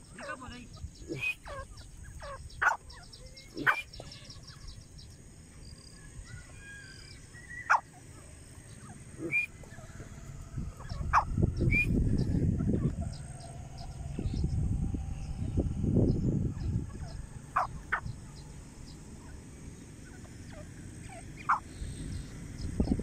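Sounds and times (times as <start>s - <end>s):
faint high twittering: 0.0s - 23.0s
sharp bird calls: 0.0s - 23.0s
low rumble: 8.4s - 23.0s.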